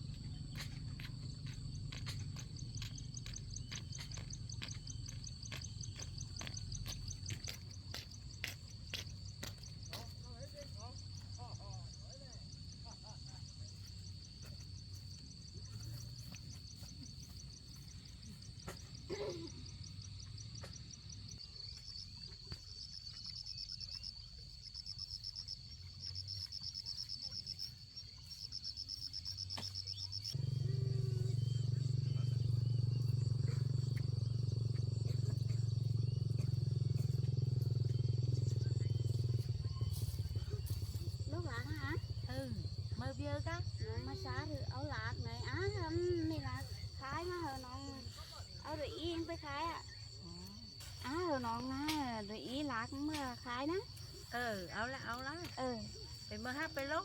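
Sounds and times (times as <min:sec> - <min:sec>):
insects trilling: 0:00.0 - 0:57.0
faint low hum: 0:29.9 - 0:46.9
low steady rumble: 0:30.3 - 0:47.8.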